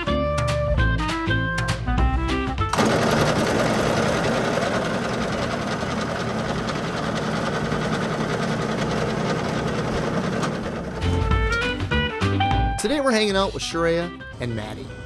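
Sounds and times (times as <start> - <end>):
music: 0.0 - 6.4, 9.9 - 15.0
electric bread slicer buzzing: 2.7 - 12.1.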